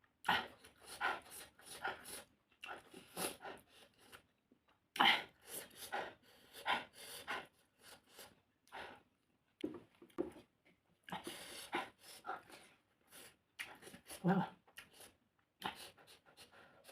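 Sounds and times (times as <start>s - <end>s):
panting breaths: 0.2s - 4.3s, 5.0s - 9.1s, 11.1s - 16.9s
wet chewing and lip smacking: 13.1s - 16.5s.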